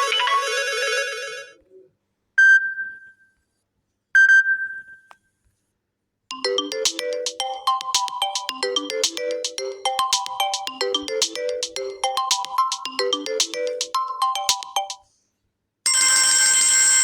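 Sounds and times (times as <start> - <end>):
busy ringtone melody: 6.3 - 15.1
melodic ringtone: 6.3 - 15.1.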